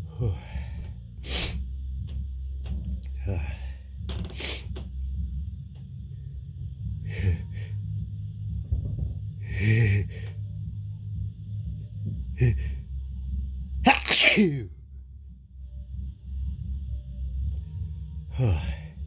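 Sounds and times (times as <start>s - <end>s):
man breathing sharply: 0.3s - 1.7s
man sneezing: 13.9s - 14.7s.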